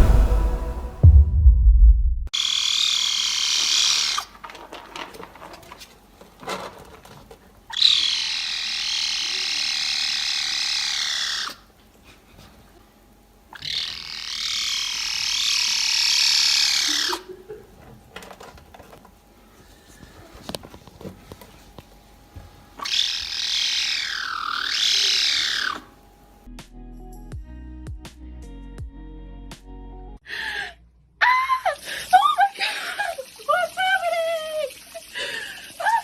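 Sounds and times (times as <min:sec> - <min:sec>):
cat wavering high calls: 0:22.8 - 0:25.9.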